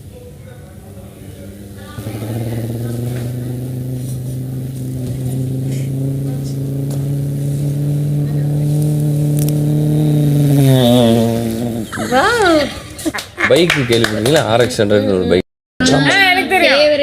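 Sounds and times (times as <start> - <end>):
man imitating car engine hum: 1.1 - 12.8.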